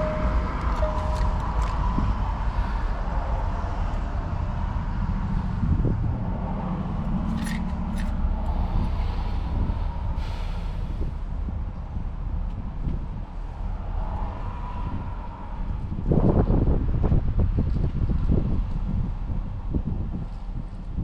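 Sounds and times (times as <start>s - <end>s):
engine idling: 0.0s - 13.7s.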